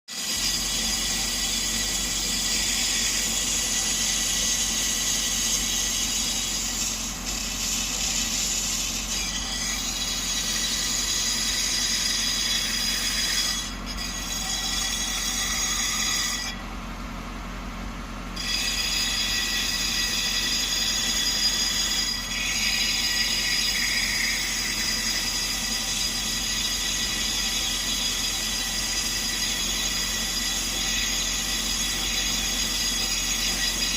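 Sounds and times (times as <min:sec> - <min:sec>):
high ringing machining hiss: 0:18.4 - 0:33.9.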